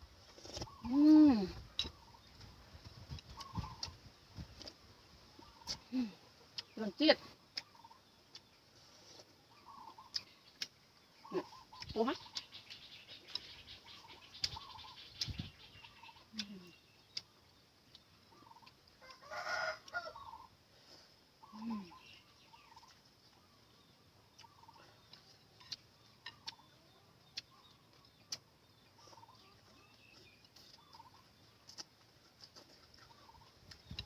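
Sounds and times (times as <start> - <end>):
chickens calling: 3.1 - 4.7, 7.6 - 16.5, 18.2 - 34.0.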